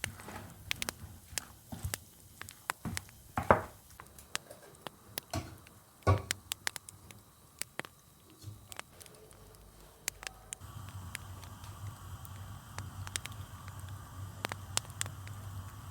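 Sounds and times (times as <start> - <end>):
light clicks and taps: 0.0 - 11.9.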